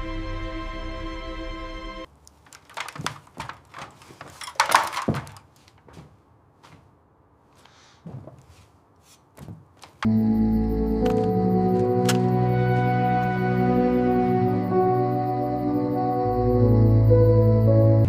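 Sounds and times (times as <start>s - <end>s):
background music: 0.0s - 2.1s, 10.1s - 18.0s
knocks and thuds: 2.5s - 6.9s.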